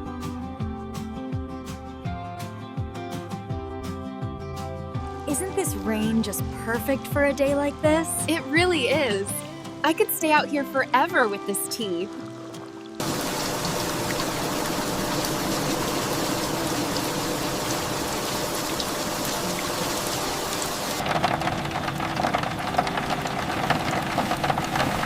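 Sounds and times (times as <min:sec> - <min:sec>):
heavy rain hissing: 0:13.0 - 0:25.0
dense crackling ticks: 0:21.0 - 0:25.0.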